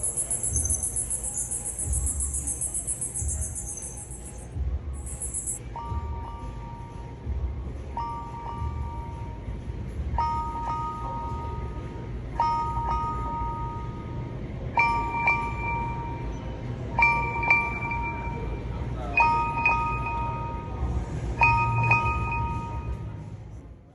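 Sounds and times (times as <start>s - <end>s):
bell-like ringtone chime: 0.0s - 6.9s.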